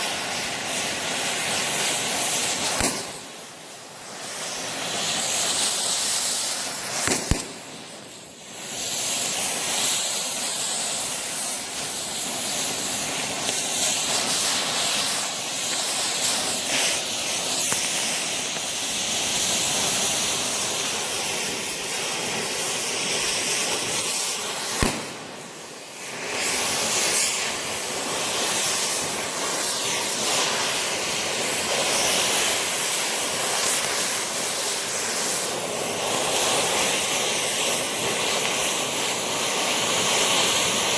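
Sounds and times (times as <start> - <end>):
cutting torch hissing: 0.0 - 40.9
sharp click: 7.0 - 7.6.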